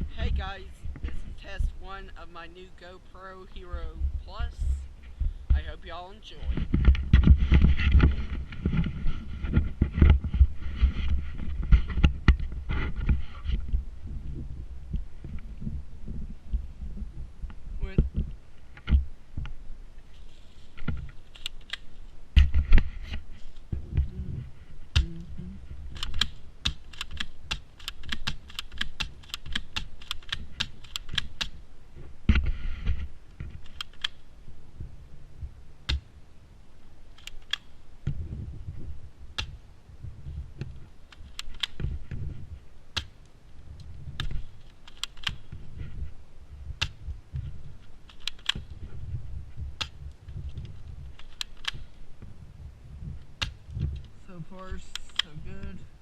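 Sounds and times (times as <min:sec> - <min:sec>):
low rumbling handling noise: 0:03.2 - 0:56.0.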